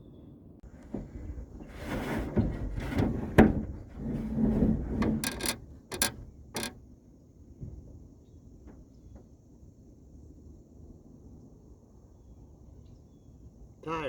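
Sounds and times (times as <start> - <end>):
handling noise rubbing and knocking: 0.6 - 6.9.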